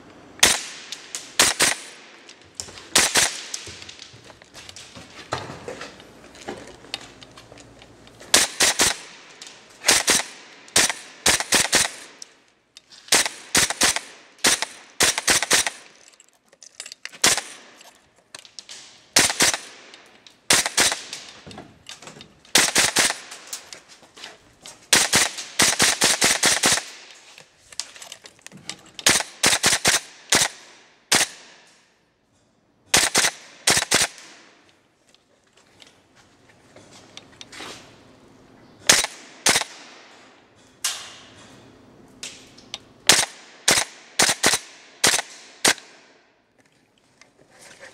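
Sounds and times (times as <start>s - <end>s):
airsoft rifle firing bursts: 0.4s - 2.1s, 2.9s - 3.7s, 8.3s - 12.2s, 13.1s - 16.0s, 17.2s - 17.8s, 19.2s - 19.9s, 20.5s - 21.2s, 22.5s - 23.4s, 24.9s - 27.1s, 29.0s - 31.4s, 32.9s - 34.4s, 43.1s - 45.8s.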